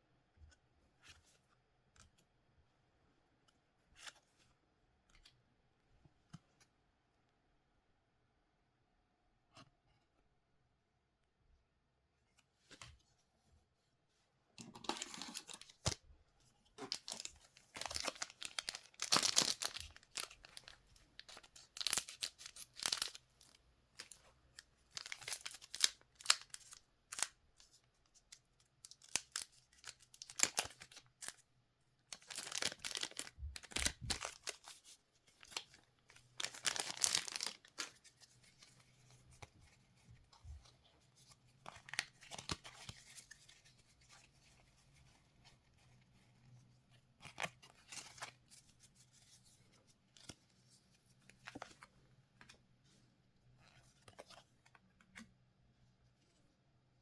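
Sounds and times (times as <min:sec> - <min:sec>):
card pack wrappers tearing: 0:16.9 - 0:20.7, 0:21.5 - 0:23.2, 0:32.2 - 0:34.6, 0:36.4 - 0:37.8.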